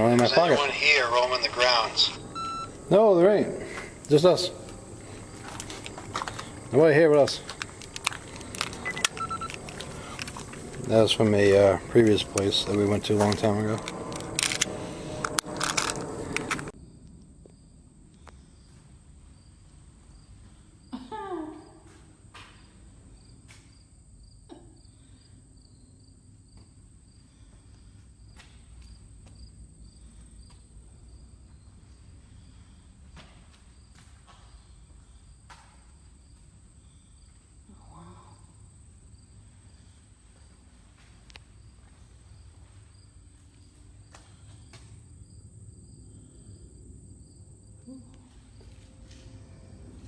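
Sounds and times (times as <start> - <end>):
crickets chirping: 0.0 - 50.0
scattered clicks: 7.4 - 11.0, 12.0 - 17.2
low rumble: 7.6 - 17.9, 48.2 - 50.0.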